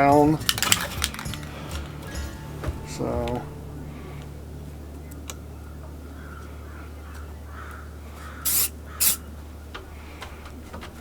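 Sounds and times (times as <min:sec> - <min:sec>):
steady low hum: 0:00.0 - 0:10.9
spray paint hissing: 0:08.4 - 0:09.2.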